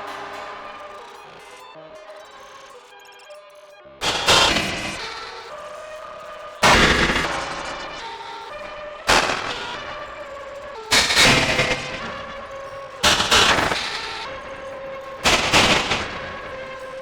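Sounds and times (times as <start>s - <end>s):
distorted electronic percussive hits: 4.0s - 5.5s, 6.6s - 17.0s.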